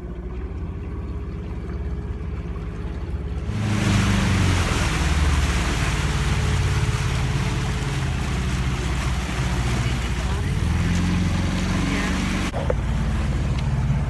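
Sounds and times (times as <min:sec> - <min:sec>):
motorboat engine: 0:00.0 - 0:14.0
rush of water and wind: 0:03.4 - 0:14.0.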